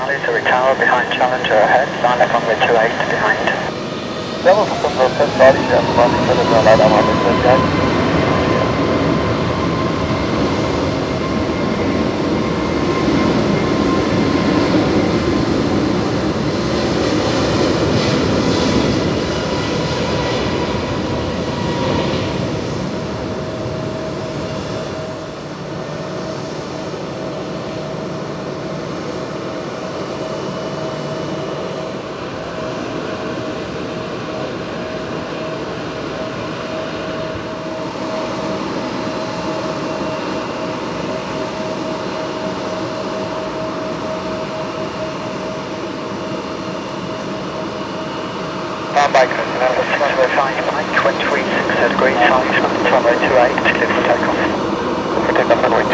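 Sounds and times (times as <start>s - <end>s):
jet engines at taxi power: 0.0s - 55.9s.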